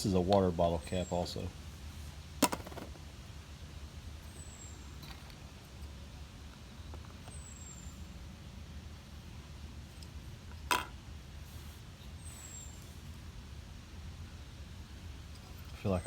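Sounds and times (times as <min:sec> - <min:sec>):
low outdoor rumble: 0:00.0 - 0:16.0.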